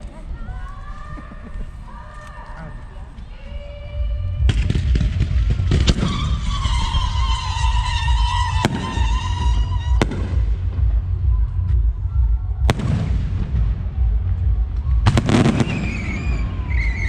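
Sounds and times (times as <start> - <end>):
constant low rumble: 0.0 - 17.0
fireworks bangs: 4.4 - 11.3, 12.6 - 17.0
high whistling tone: 5.9 - 10.0, 14.7 - 17.0.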